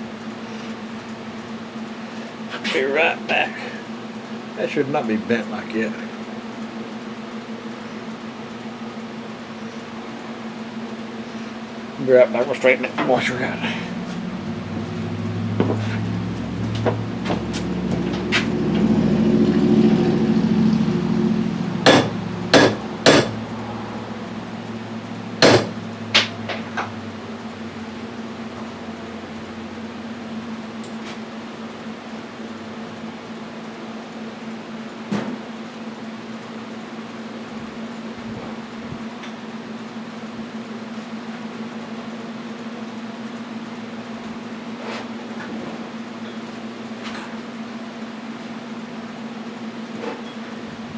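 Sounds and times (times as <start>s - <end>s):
steady low hum: 0.0s - 50.9s
hammer striking metal: 21.8s - 23.4s, 25.4s - 26.6s.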